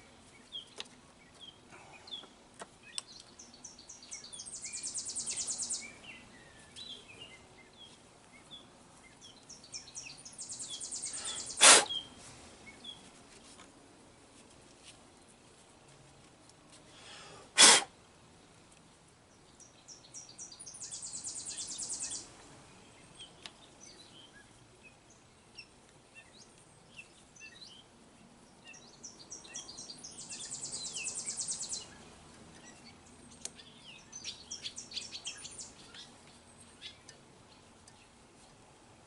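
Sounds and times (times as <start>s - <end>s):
bird chirps: 0.0s - 13.1s, 19.6s - 27.9s, 28.6s - 38.1s
songbird trilling: 2.8s - 7.4s, 9.2s - 12.2s, 19.9s - 22.3s, 28.7s - 32.0s, 32.6s - 36.1s.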